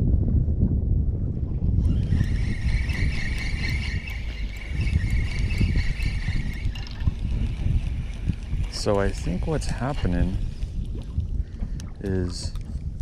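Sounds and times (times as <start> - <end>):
wind buffeting microphone: 0.0 - 13.0
steady high buzz: 1.8 - 11.1.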